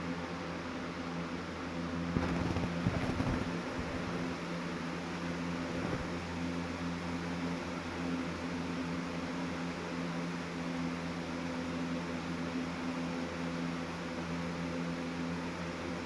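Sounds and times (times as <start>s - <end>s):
box fan air rush: 2.1s - 4.4s.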